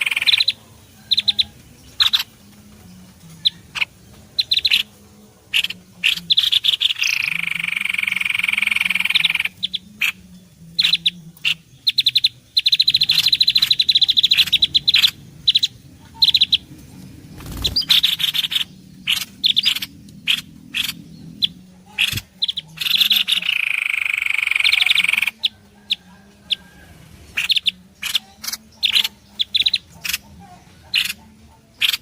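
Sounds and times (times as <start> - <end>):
songbirds chattering trills and chirps: 0.0 - 32.0
buzzing bird trill: 17.4 - 25.5.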